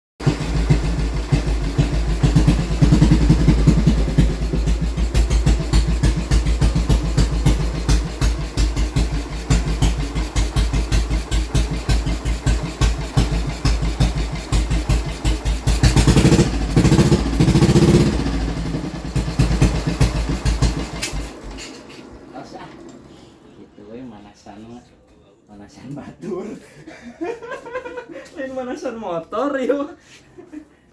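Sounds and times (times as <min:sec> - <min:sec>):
motorcycle engine idling and revving: 0:00.2 - 0:23.5.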